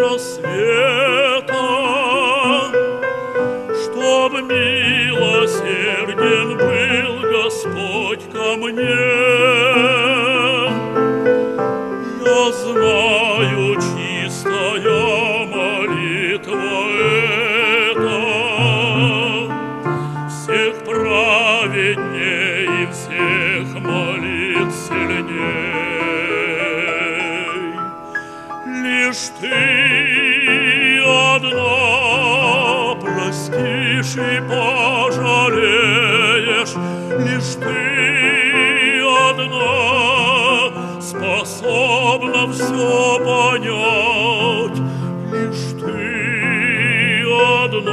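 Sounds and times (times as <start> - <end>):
man singing opera: 0.0 - 47.9
piano accompaniment: 0.0 - 47.9.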